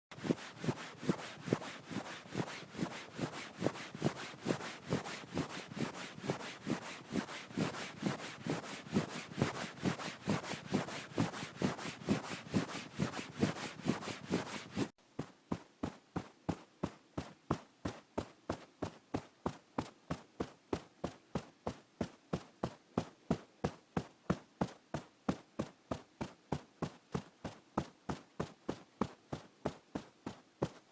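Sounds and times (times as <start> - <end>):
sandpaper sanding strokes: 0.1 - 14.9.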